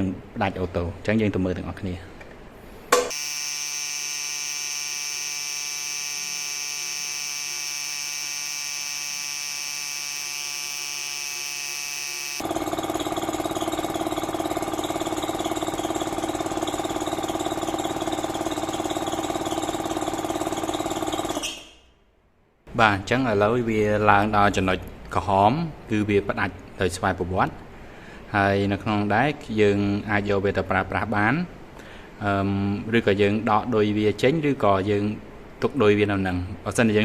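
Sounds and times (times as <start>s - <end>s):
piston air compressor running: 2.9s - 21.8s.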